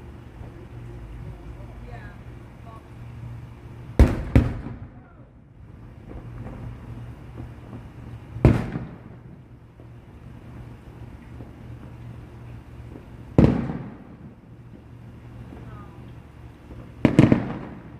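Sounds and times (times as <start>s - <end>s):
fireworks bangs: 3.9s - 17.9s.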